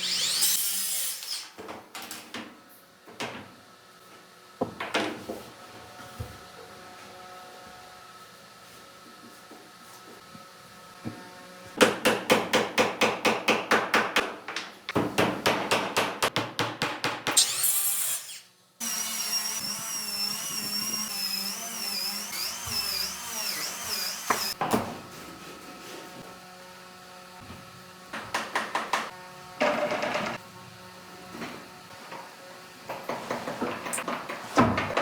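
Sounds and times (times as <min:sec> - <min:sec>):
power tool whine: 0:17.4 - 0:24.6.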